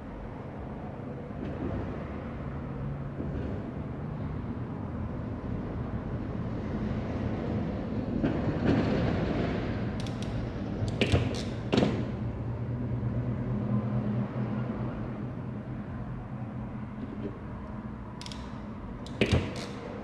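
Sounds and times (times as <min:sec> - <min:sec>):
sharp clicks: 0:10.0 - 0:11.6.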